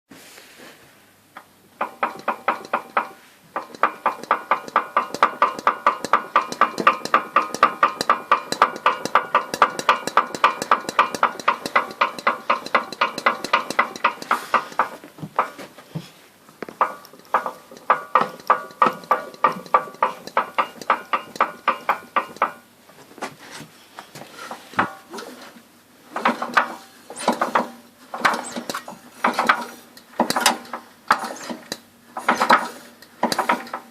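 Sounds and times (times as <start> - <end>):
engine knocking: 1.8 - 15.0.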